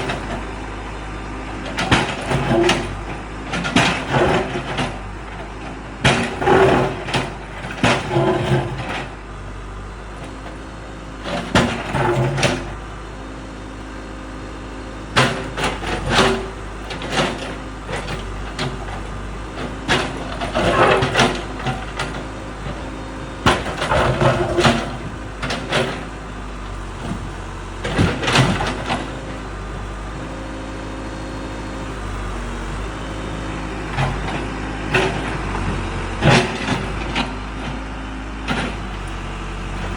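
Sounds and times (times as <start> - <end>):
diesel engine running: 0.0 - 39.9
concrete scraping and clanking: 15.5 - 22.8.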